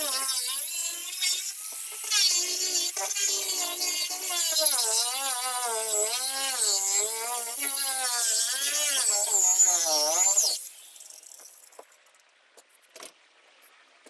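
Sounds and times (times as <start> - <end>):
power tool motor whine: 0.0 - 11.7.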